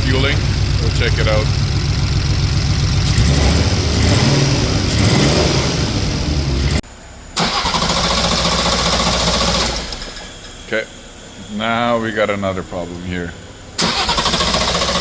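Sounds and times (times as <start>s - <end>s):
engine running with misfire: 0.0s - 6.8s, 7.4s - 10.7s, 13.8s - 15.0s.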